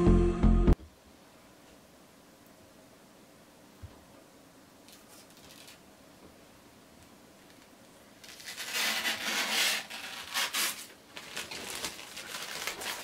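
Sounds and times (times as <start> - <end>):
rustling and crinkling handling: 4.8 - 5.8, 9.9 - 13.0.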